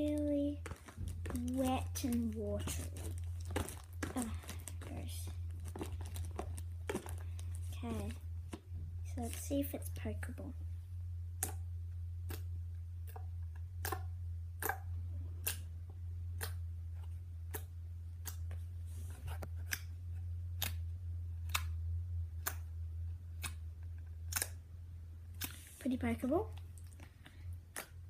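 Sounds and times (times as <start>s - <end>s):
steady low hum: 0.0s - 28.0s
sticky slime clicks: 13.8s - 14.8s.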